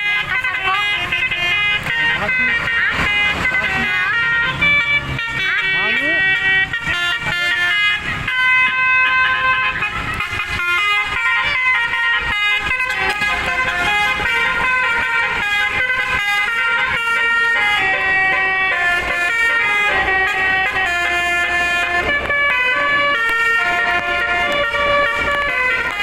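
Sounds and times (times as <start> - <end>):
bus air horn melody: 0.0 - 26.0.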